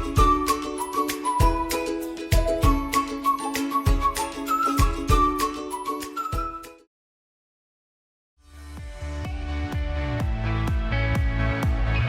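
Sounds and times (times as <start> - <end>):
kick drum beat: 1.4 - 3.0, 8.8 - 12.0.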